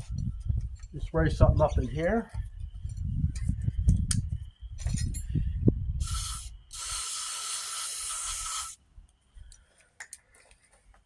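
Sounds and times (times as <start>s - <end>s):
aerosol spray can hissing: 6.0s - 8.8s.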